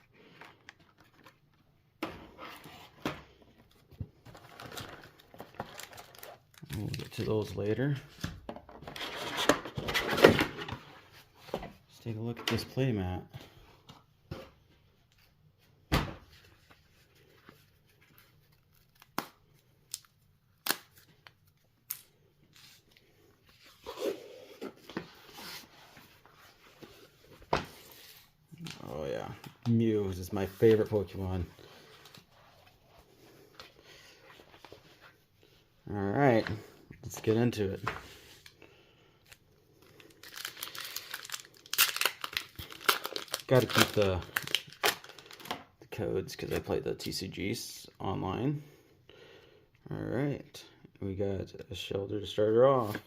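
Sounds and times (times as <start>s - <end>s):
packaging rustling and tearing: 4.3s - 7.4s, 39.3s - 45.6s.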